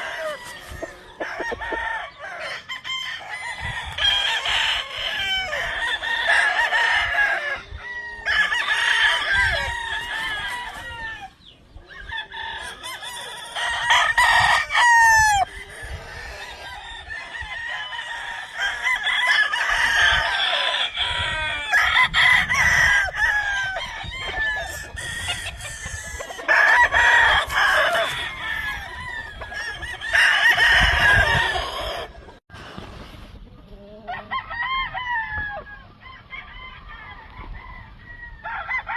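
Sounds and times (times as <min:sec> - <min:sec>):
chickens clucking: 0:00.0 - 0:02.8, 0:15.2 - 0:17.5, 0:22.4 - 0:34.4
roosters crowing: 0:00.0 - 0:32.7, 0:33.7 - 0:38.9.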